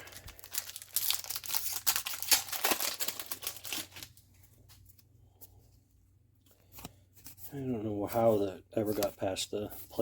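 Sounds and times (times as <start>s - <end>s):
wrapper crinkling and tearing: 0.0s - 4.2s.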